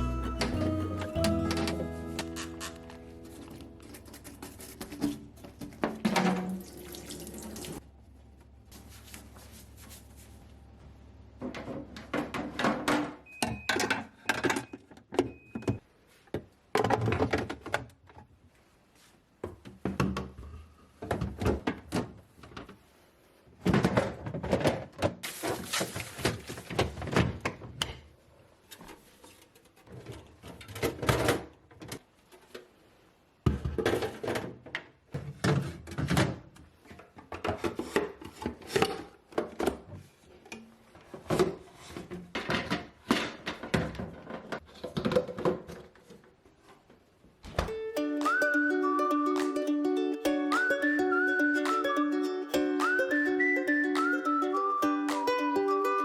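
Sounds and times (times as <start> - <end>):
items clattering: 0.4 - 6.7, 16.4 - 18.3, 33.5 - 46.9.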